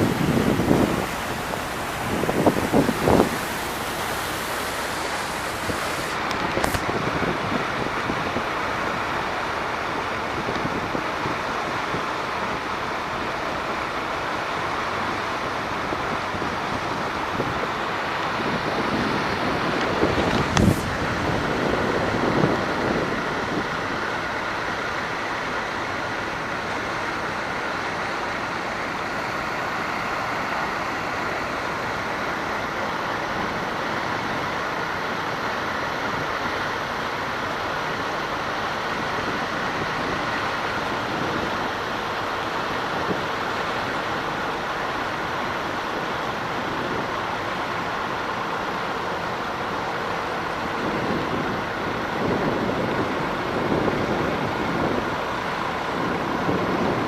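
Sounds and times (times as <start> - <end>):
continuous rushing noise: 0.0 - 57.0
road vehicle running: 0.0 - 57.0.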